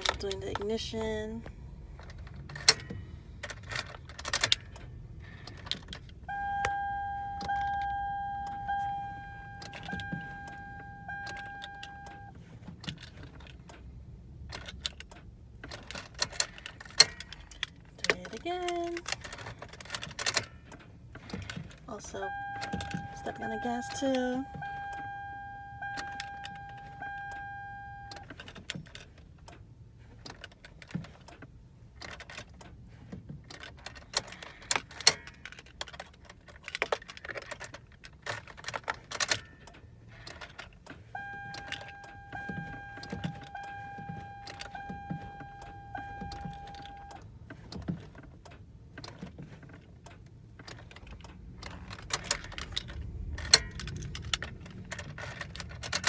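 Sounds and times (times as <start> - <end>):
keys jangling in ignition: 0.0 - 56.0
steady electronic tone: 6.3 - 12.3, 22.3 - 28.2, 41.2 - 47.2
knocks and clicks: 7.4 - 13.8, 14.5 - 29.0, 38.3 - 56.0.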